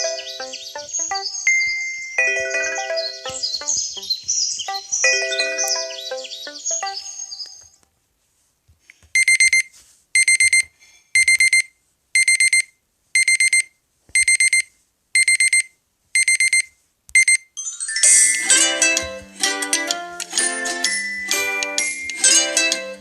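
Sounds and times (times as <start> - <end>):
rapid high alarm beeps: 9.2 - 10.6, 11.2 - 17.5.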